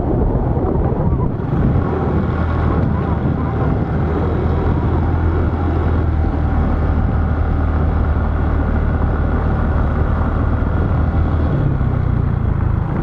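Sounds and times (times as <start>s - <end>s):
noisy rush: 0.0s - 13.0s
vehicle engine running: 0.0s - 13.0s.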